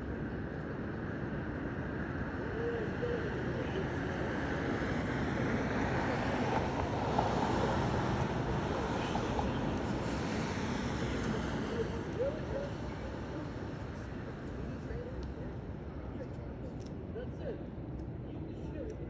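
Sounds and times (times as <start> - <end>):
city street traffic noise: 0.0 - 19.0.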